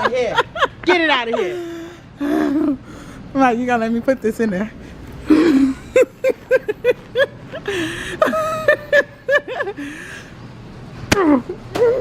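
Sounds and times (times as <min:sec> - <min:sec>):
person laughing: 0:00.0 - 0:02.8, 0:05.2 - 0:10.0.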